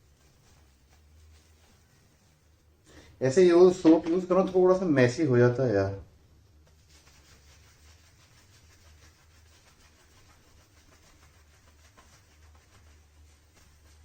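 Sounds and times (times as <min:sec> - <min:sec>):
shaving brush lathering soap: 0:00.0 - 0:02.7, 0:06.6 - 0:14.0.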